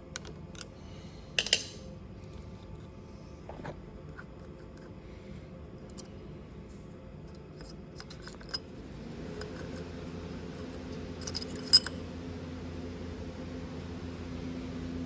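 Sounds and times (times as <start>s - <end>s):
motor hum: 0.0s - 15.0s
small metal parts clinking: 1.4s - 2.9s, 5.8s - 6.2s, 7.3s - 9.9s, 10.5s - 12.0s.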